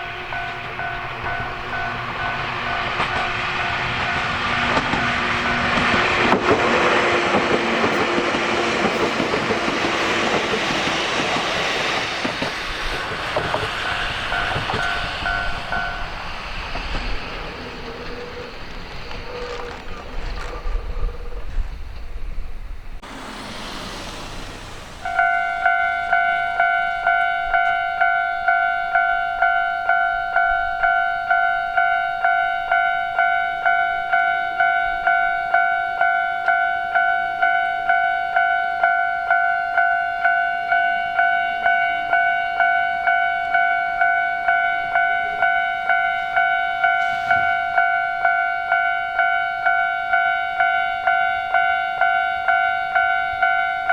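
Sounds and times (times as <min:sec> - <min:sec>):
level crossing warning bell: 0:00.0 - 0:09.6, 0:13.7 - 0:16.4, 0:25.0 - 0:53.9
rush of noise: 0:23.0 - 0:25.6.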